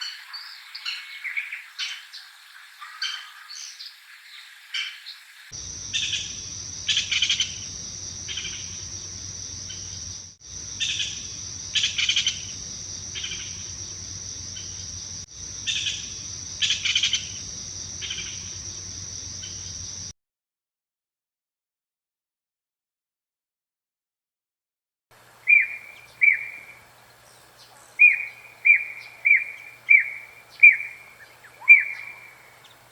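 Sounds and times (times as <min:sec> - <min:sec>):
high insect drone: 0:05.5 - 0:20.1
woodpecker call notes: 0:05.6 - 0:20.1, 0:25.4 - 0:26.8, 0:28.0 - 0:32.9.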